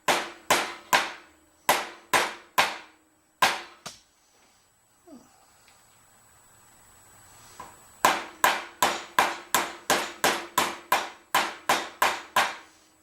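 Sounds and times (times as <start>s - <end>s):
hammer striking metal: 0.1s - 3.8s, 8.0s - 12.7s.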